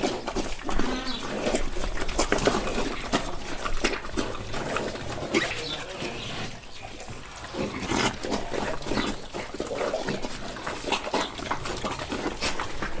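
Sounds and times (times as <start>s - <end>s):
pigs chomping and smacking: 0.0s - 13.0s
pigs grunting: 0.0s - 13.0s.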